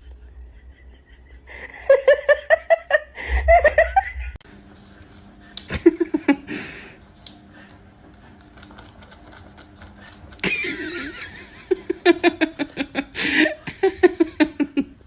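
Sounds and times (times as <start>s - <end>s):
person laughing hard: 0.0s - 4.4s, 5.7s - 6.8s, 10.4s - 15.0s.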